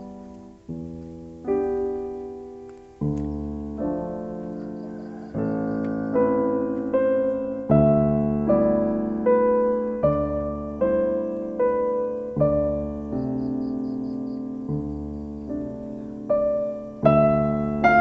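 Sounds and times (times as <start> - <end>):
slow solo piano chords: 0.0 - 18.0.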